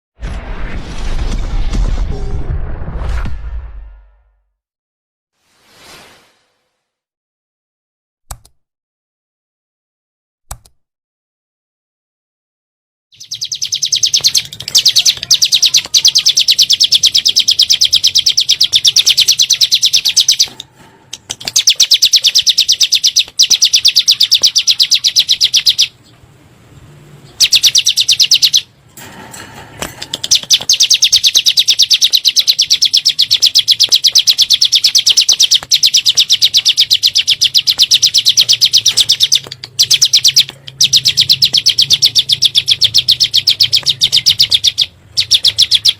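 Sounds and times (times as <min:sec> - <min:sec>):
bird singing fast high notes: 0:13.2 - 0:20.6, 0:21.5 - 0:26.0, 0:27.3 - 0:28.8, 0:30.2 - 0:45.9.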